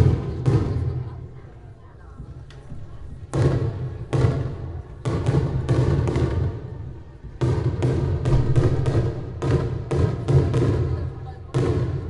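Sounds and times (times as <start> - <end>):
fireworks exploding: 3.3 - 6.8, 7.4 - 12.0.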